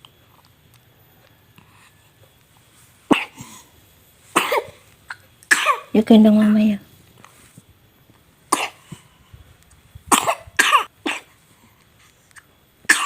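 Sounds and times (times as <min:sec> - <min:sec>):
baby coughing: 0:03.1 - 0:03.5, 0:04.4 - 0:05.9, 0:08.5 - 0:08.8, 0:10.1 - 0:11.3.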